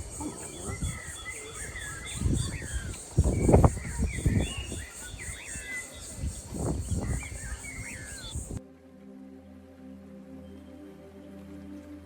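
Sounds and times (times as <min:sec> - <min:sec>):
high pulsing insect buzz: 0:00.0 - 0:08.6
songbirds chirping: 0:00.0 - 0:08.6.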